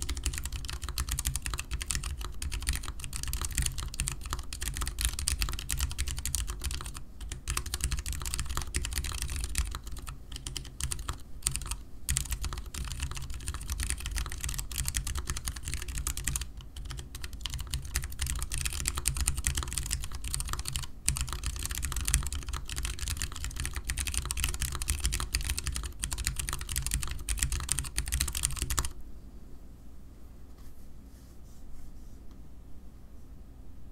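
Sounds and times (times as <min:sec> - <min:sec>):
fast typing on mechanical keyboard: 0:00.0 - 0:29.0
faint low hum: 0:00.0 - 0:33.9.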